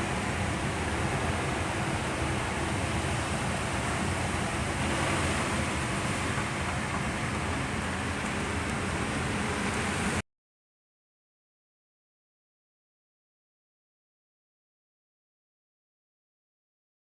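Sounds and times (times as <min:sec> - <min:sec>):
strong wind blowing: 0:00.0 - 0:10.2
wind buffeting microphone: 0:00.0 - 0:10.2.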